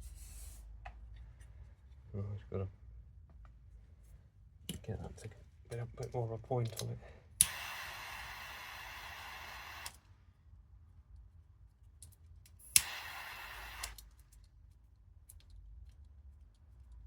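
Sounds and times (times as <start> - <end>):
gas torch hissing: 7.4 - 10.0, 12.6 - 14.0
lighter clicking: 7.4 - 10.0, 12.6 - 14.1.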